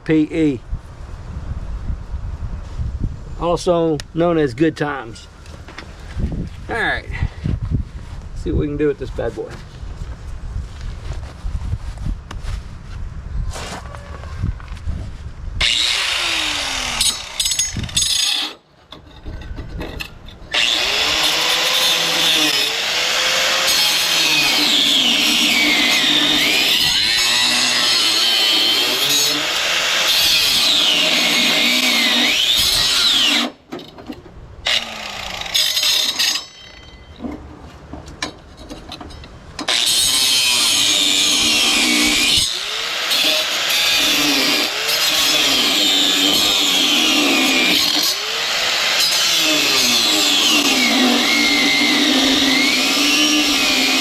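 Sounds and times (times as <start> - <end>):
power grinder grinding metal: 15.6 - 33.6, 34.7 - 37.0, 39.7 - 54.0.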